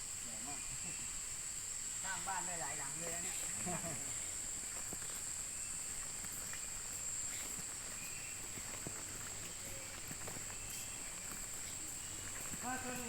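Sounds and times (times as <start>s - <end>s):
insect chorus drone: 0.0s - 13.0s.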